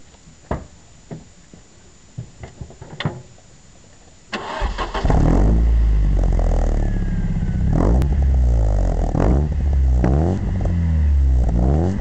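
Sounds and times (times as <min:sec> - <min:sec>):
car engine starting and running: 0:04.4 - 0:12.0.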